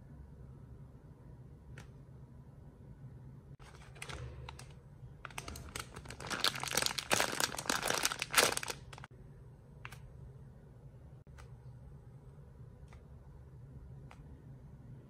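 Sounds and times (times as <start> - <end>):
crinkly material crackling: 5.3 - 9.1.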